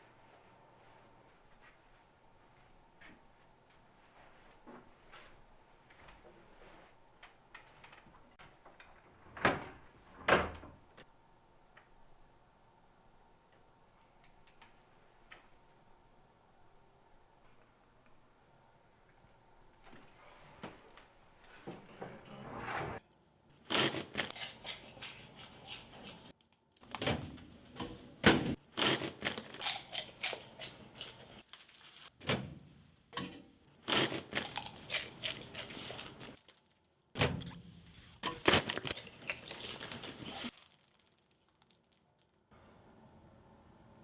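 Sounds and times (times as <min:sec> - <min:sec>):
paper bag rustling and crinkling: 0:28.8 - 0:32.2, 0:33.9 - 0:36.9, 0:38.0 - 0:42.4.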